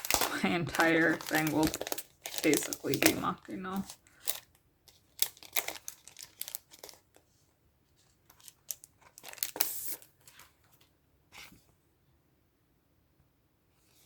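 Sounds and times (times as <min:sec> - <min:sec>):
plastic packaging crinkling: 0:00.0 - 0:07.3, 0:08.2 - 0:10.4.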